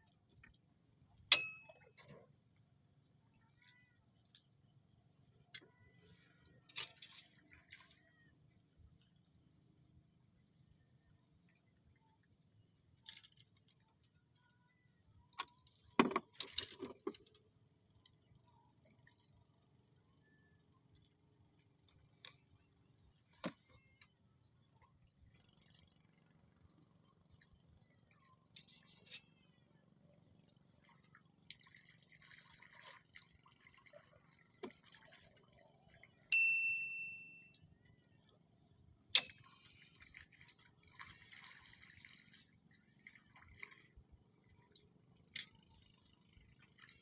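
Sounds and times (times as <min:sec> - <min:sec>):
bright metallic ding: 0:01.3 - 0:01.8, 0:36.3 - 0:37.5
faint small clicks: 0:20.9 - 0:22.7, 0:44.6 - 0:46.9.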